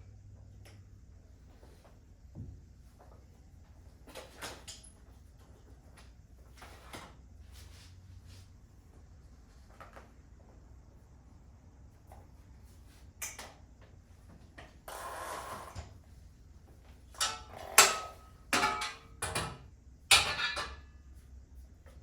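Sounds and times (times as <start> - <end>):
objects knocking and clattering: 17.2 - 20.9.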